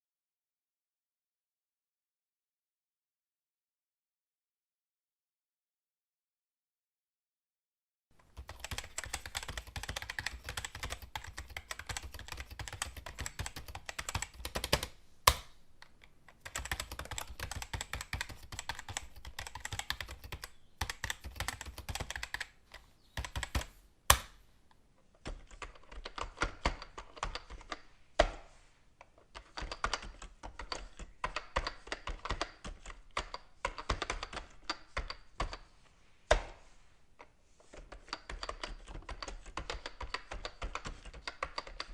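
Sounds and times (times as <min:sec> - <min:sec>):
fast keyboard typing: 0:08.2 - 0:15.4, 0:16.4 - 0:22.6, 0:23.2 - 0:23.7, 0:25.3 - 0:27.8, 0:29.3 - 0:35.6, 0:37.8 - 0:41.9.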